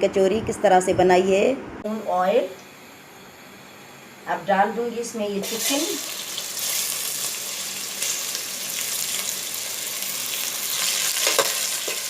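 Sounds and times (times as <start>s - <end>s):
chicken sizzling in hot oil: 5.4s - 12.0s.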